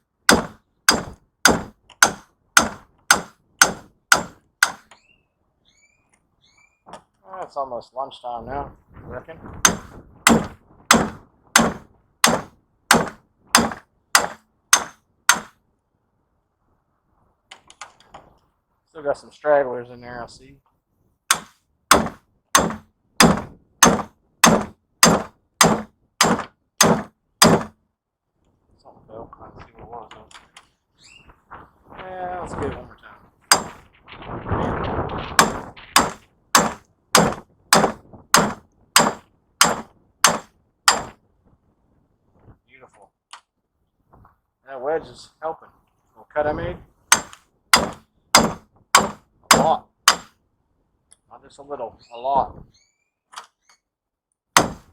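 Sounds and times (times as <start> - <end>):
hammer striking metal: 0.3 - 5.0, 9.6 - 15.6, 21.3 - 27.8, 33.5 - 33.8, 35.4 - 41.2, 47.1 - 50.4, 54.6 - 54.9.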